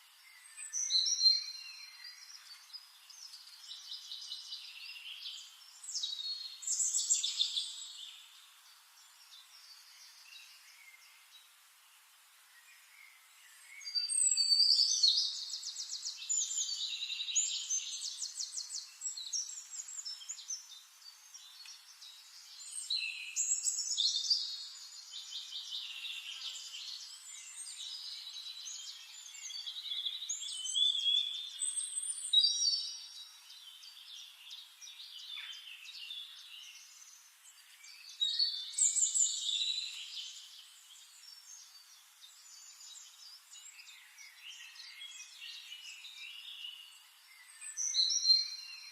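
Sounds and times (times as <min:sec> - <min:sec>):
songbirds singing: 0:00.0 - 0:48.9.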